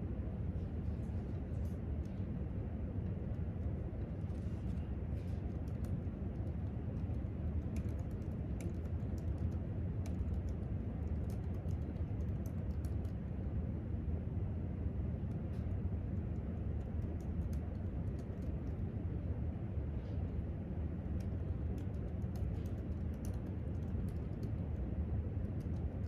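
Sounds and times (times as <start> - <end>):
low room rumble: 0.0 - 26.0
laptop keyboard typing: 5.6 - 13.2, 21.2 - 24.6.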